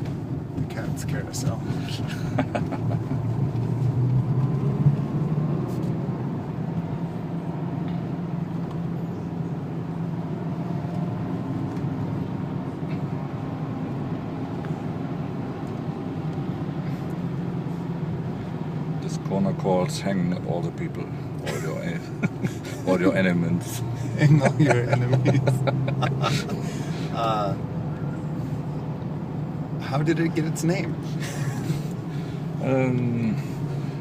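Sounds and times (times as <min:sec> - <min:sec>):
tyre and road noise: 0:00.0 - 0:34.0
diesel engine running: 0:21.0 - 0:34.0.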